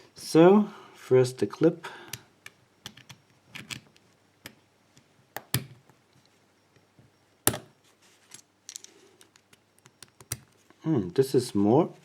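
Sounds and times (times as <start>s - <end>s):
metallic clicks of padlock parts: 2.1s - 5.9s, 7.5s - 7.7s, 8.7s - 10.6s.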